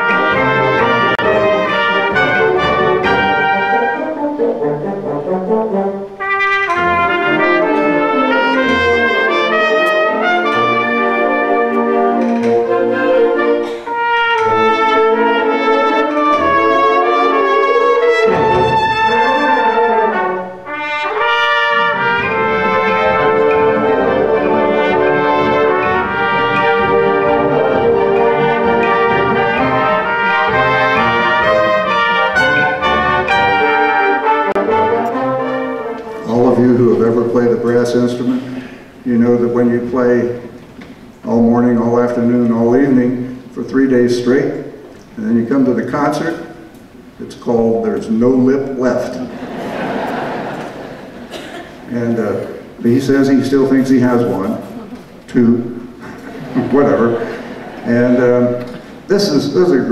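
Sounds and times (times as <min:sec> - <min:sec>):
concert band playing: 0:00.0 - 0:45.8, 0:48.4 - 0:59.9
brass held chords: 0:00.0 - 0:47.2.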